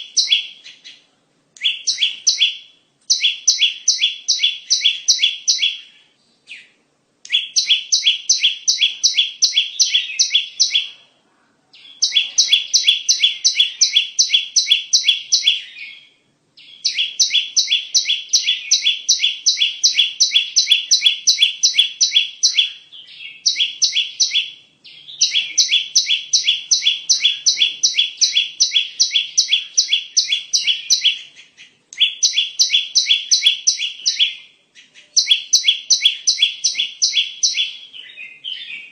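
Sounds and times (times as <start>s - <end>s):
bird chirping rapidly: 0.0s - 1.0s, 1.6s - 11.0s, 11.8s - 38.9s.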